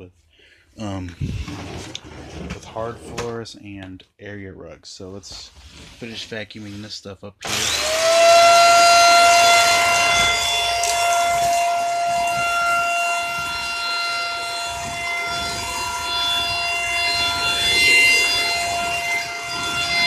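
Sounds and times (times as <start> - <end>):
vacuum motor whining: 7.4 - 20.0.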